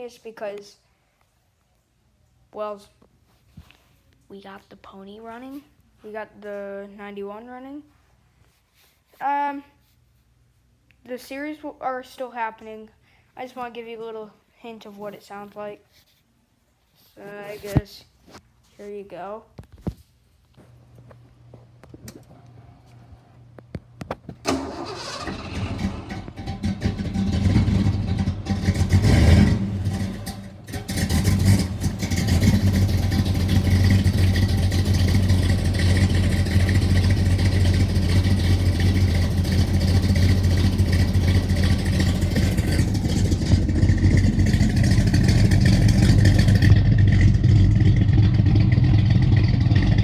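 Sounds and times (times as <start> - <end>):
car engine revving and idling: 24.9 - 50.0.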